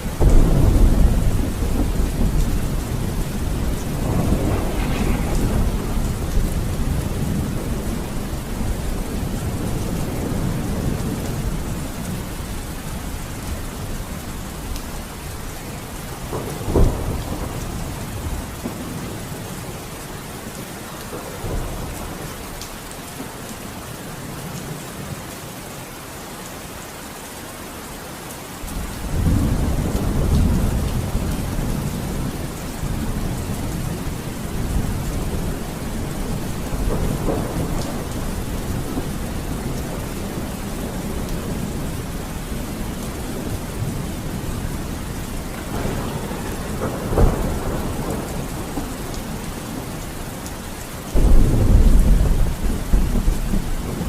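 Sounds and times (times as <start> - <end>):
heavy rain: 0.0 - 54.0
thunder: 0.1 - 12.4, 15.6 - 19.9, 28.7 - 50.2, 51.1 - 54.0.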